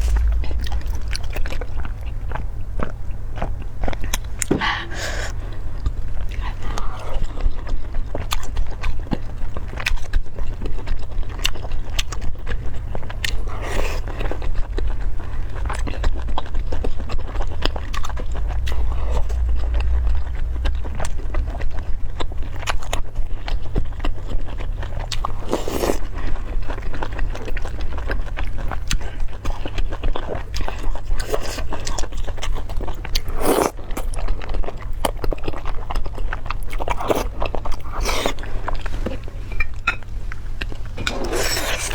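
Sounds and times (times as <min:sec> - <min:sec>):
chewing and biting food: 0:00.0 - 0:01.9, 0:05.8 - 0:39.1
steady low hum: 0:00.0 - 0:28.8.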